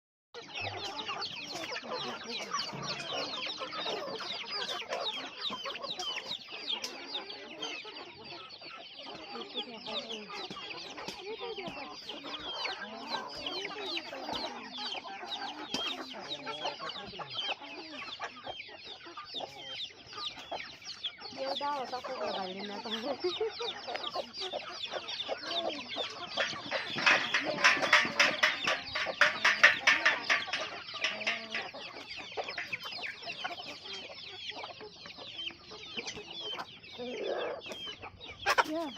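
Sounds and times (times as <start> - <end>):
chickens chirping: 0.4 - 38.9
chickens clucking: 0.4 - 38.9.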